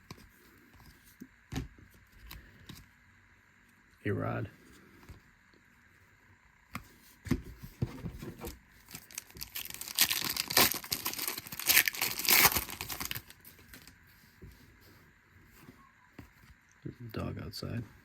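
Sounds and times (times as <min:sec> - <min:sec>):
foil wrapper tearing and crinkling: 0:08.8 - 0:13.9.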